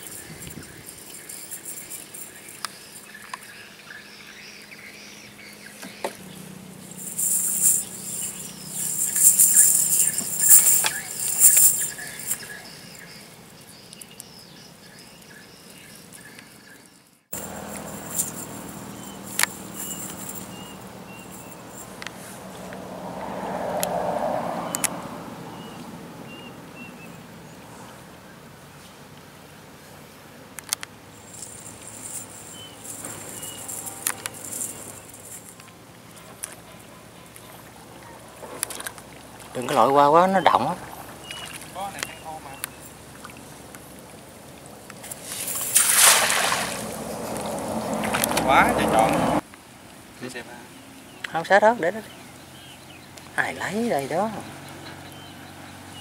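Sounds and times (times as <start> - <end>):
insects buzzing: 0.0 - 25.0, 31.0 - 36.3, 40.8 - 49.4
water splashing and pattering: 5.7 - 14.4, 31.1 - 50.1
light pattering: 6.9 - 13.1, 31.2 - 37.5.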